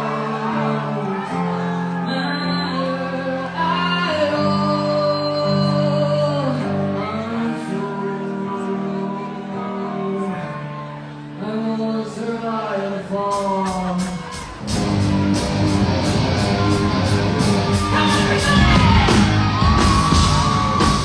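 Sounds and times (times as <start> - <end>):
lead vocal singing long notes: 0.0 - 21.0
live rock band playing: 13.3 - 21.0.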